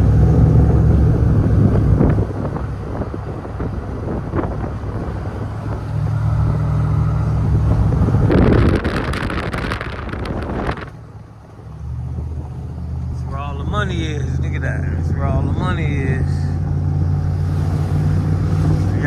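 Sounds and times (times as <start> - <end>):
vehicle engine and road drone: 0.0 - 19.0.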